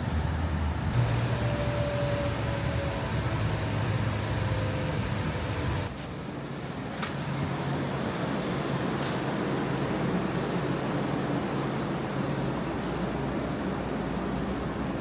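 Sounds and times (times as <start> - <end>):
vehicle rumble: 0.0 - 5.9.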